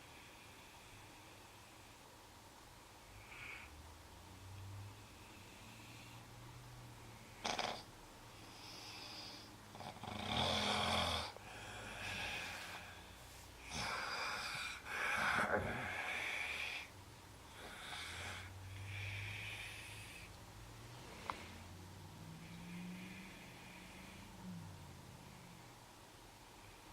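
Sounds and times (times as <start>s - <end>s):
person snoring: 7.3s - 7.9s, 8.7s - 16.9s, 22.3s - 25.6s.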